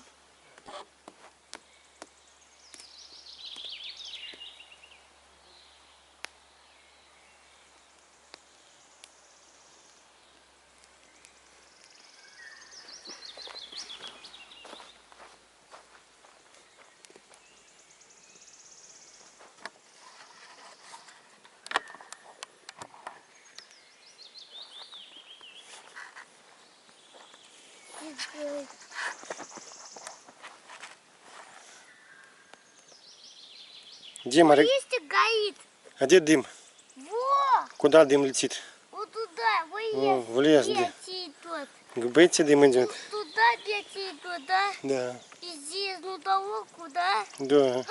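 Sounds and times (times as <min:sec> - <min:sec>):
campfire crackling and popping: 0:00.0 - 0:05.2, 0:06.1 - 0:06.5, 0:07.4 - 0:14.3, 0:14.9 - 0:17.6, 0:21.3 - 0:23.9, 0:33.8 - 0:47.9
birds singing: 0:00.0 - 0:15.2, 0:16.4 - 0:30.4, 0:31.6 - 0:47.9.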